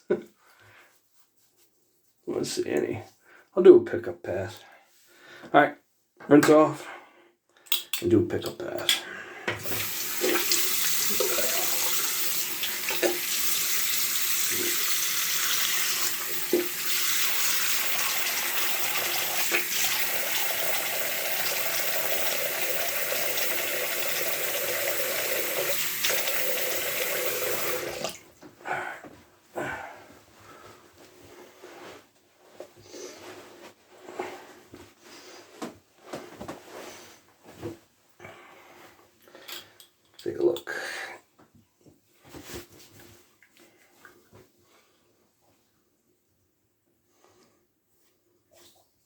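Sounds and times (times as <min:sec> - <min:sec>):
faucet running: 0:09.6 - 0:28.2.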